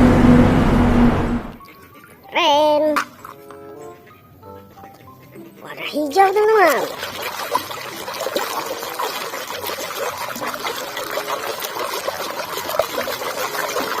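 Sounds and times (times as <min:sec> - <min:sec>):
water trickling and sloshing: 0:06.0 - 0:14.0.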